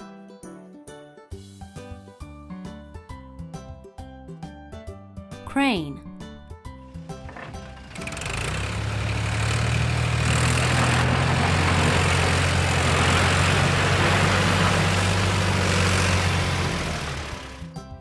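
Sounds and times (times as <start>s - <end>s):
crane engine humming: 7.8s - 17.7s.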